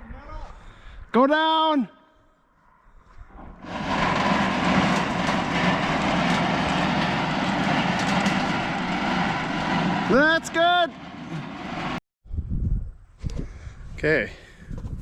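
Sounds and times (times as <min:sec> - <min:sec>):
machine engine running: 0:03.6 - 0:12.0.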